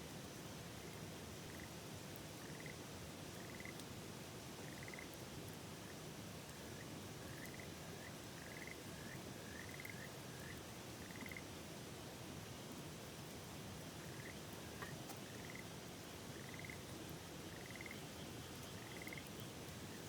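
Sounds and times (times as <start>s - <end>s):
frogs chirping: 2.4s - 2.8s, 3.5s - 3.7s, 4.7s - 5.1s, 7.3s - 8.8s, 9.5s - 11.4s, 14.1s - 14.4s, 15.3s - 15.7s, 16.3s - 16.9s, 17.5s - 20.0s.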